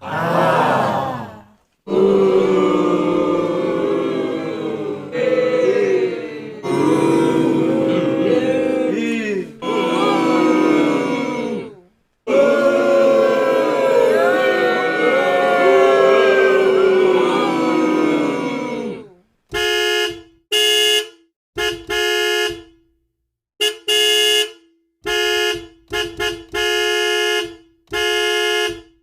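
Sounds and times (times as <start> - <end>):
large crowd voices: 0.0 - 19.1.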